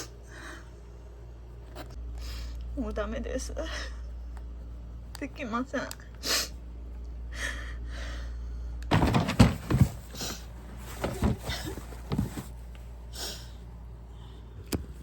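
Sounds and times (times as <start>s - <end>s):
knocks and rustling: 8.9s - 12.6s.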